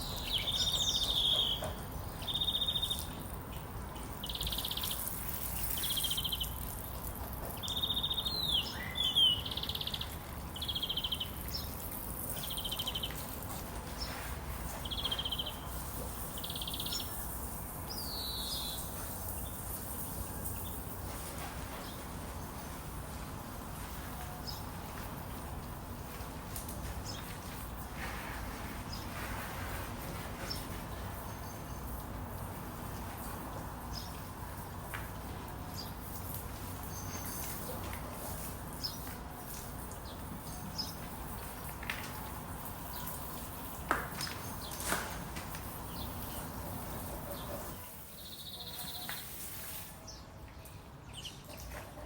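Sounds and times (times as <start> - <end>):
birds chirping: 0.0 - 21.0, 45.7 - 49.4.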